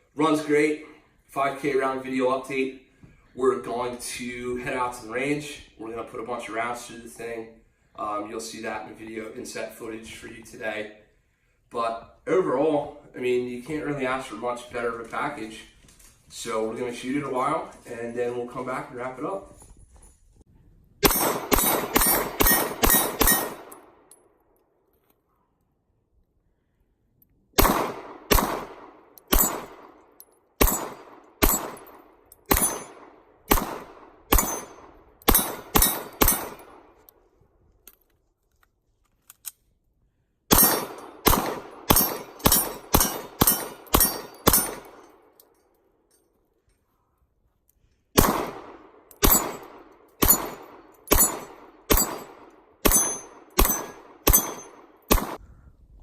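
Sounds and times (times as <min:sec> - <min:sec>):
pistol shots: 0:21.0 - 0:24.1, 0:27.6 - 0:37.1, 0:40.5 - 0:45.3, 0:48.2 - 0:55.4.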